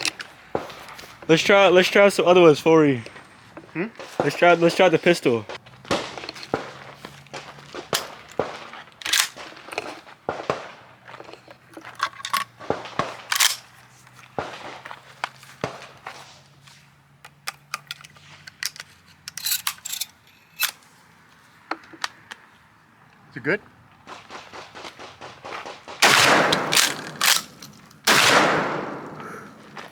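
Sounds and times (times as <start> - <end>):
gunshots: 4.0 - 11.0, 12.6 - 13.7, 14.4 - 14.8, 24.0 - 29.9.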